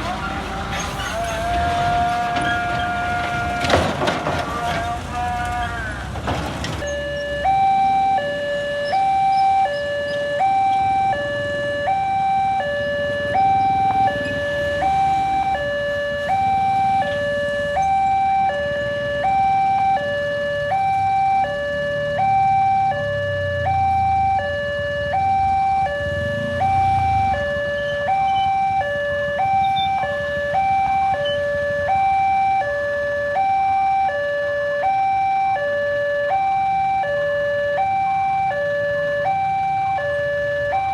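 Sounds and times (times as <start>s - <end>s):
low engine rumble: 0.0s - 20.0s
two-tone level-crossing alarm: 6.8s - 40.9s.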